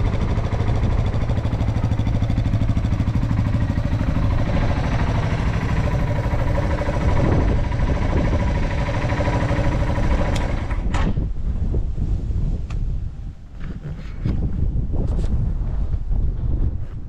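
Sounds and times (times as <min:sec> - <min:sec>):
motorcycle engine idling: 0:00.0 - 0:10.9
low rumble: 0:00.0 - 0:17.0.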